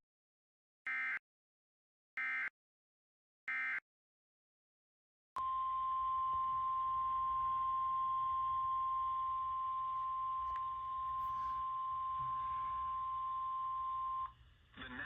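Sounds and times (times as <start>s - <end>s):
steady alarm tone: 5.4s - 14.3s.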